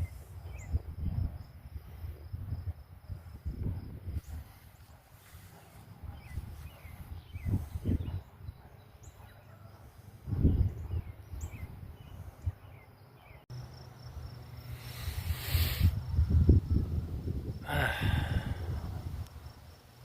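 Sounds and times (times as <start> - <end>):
wind buffeting the microphone: 0.0 - 9.2, 10.0 - 12.8, 15.0 - 19.7
faint bird chirps: 4.2 - 13.5
insect trill: 13.5 - 20.0.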